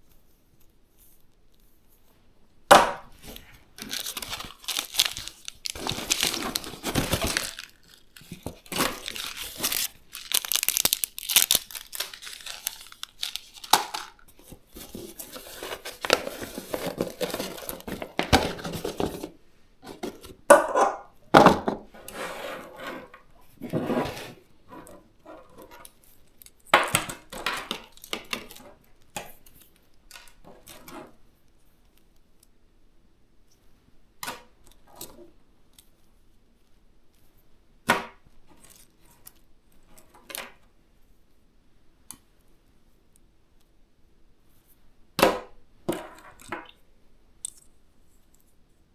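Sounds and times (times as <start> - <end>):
packaging tearing and crinkling: 3.2 - 19.2.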